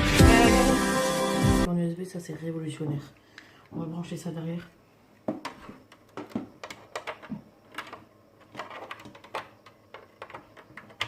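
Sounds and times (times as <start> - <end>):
plugs and cables clicking: 5.4 - 11.0.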